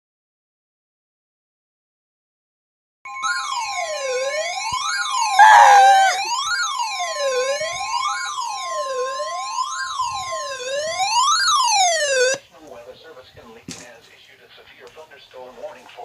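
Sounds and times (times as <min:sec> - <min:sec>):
emergency siren wailing: 0:03.4 - 0:12.4
steady high alert tone: 0:05.4 - 0:06.3.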